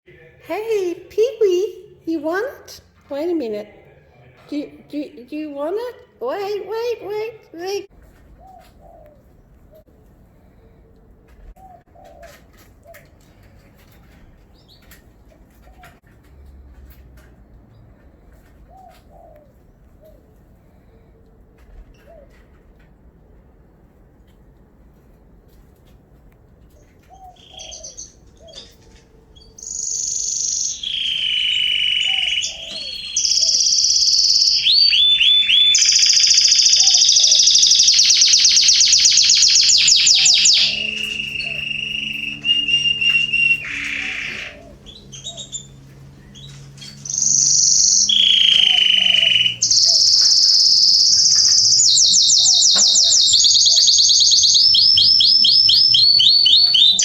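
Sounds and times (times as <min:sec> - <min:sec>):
canary singing: 0:26.8 - 0:57.0.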